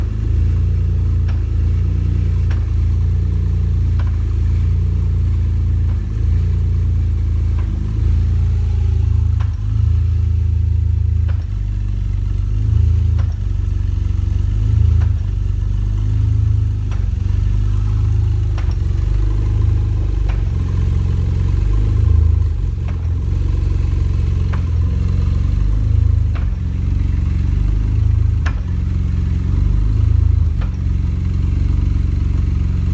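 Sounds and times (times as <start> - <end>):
sharp engine knocks: 0.0 - 31.8
car engine rumble: 0.0 - 32.9.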